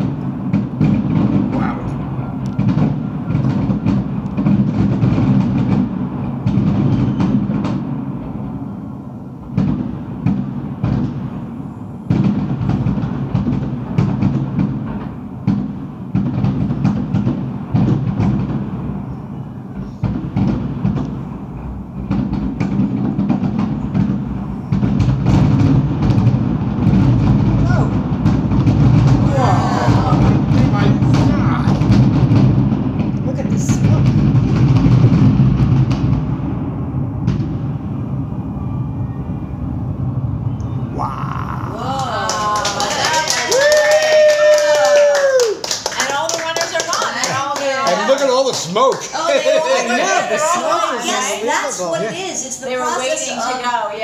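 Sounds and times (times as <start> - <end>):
fireworks bangs and crackles: 0.0 - 51.6
low rumble: 25.6 - 42.6.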